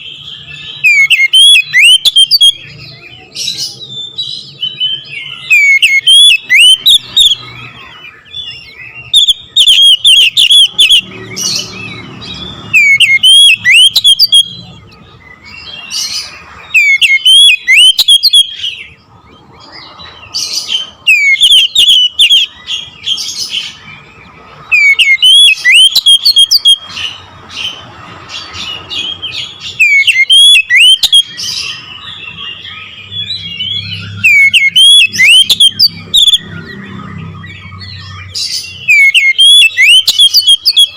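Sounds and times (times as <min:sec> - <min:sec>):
bird singing whistled phrases: 0:00.0 - 0:19.0, 0:20.5 - 0:24.0, 0:24.7 - 0:27.1, 0:28.7 - 0:40.9.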